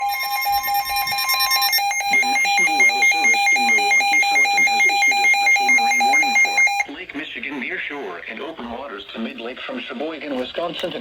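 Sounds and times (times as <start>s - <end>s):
rapidly pulsing beep: 0.0s - 6.9s
steady high alert tone: 0.0s - 7.0s.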